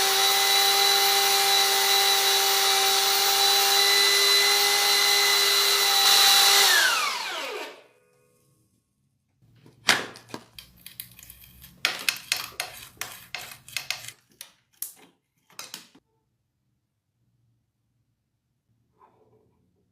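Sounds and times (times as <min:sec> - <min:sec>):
power tool motor whining: 0:00.0 - 0:07.8.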